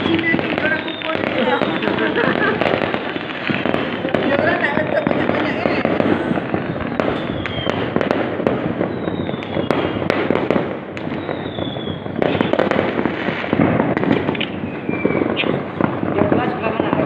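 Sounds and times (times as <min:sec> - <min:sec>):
falling firework whistles: 0:00.0 - 0:04.4, 0:05.1 - 0:15.9
fireworks crackling bangs: 0:00.0 - 0:17.0.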